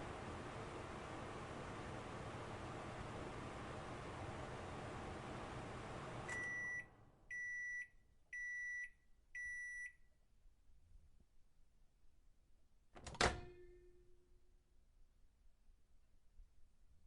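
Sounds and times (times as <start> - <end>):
microwave oven whirring: 0.0 - 7.8.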